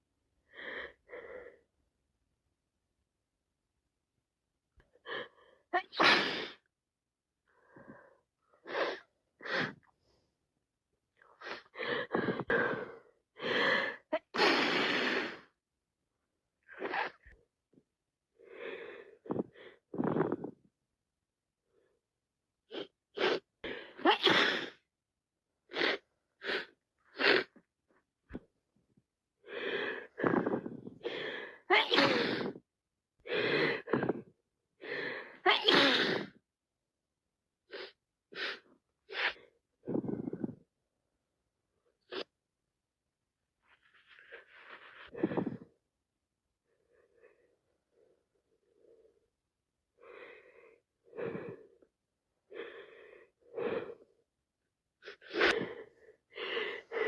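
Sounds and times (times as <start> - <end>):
woman sneezing: 5.8 - 6.6, 24.0 - 24.8, 31.7 - 32.6, 35.4 - 36.4.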